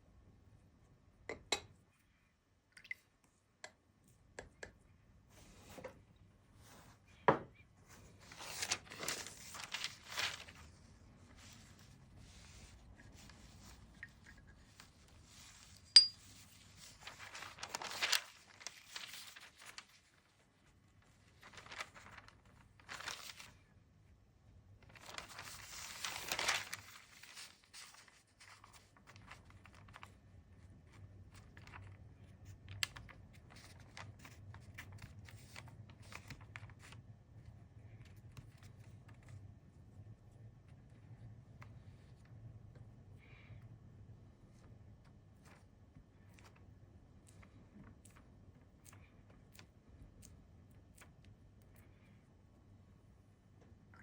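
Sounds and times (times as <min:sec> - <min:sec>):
paper rustling: 0:07.9 - 0:23.7, 0:24.8 - 0:37.0.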